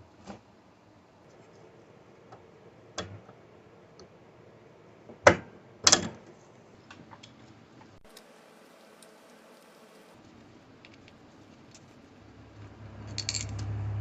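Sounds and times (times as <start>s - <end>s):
clicks and knocks of small parts: 13.0s - 13.7s.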